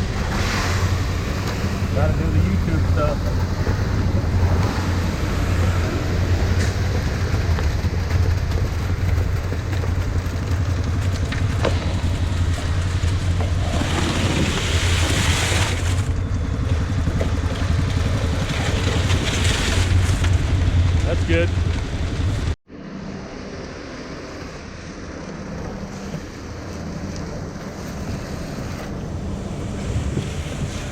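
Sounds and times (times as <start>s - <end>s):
rushing noise: 0.0s - 17.0s
diesel engine droning: 0.0s - 27.6s, 28.9s - 30.9s.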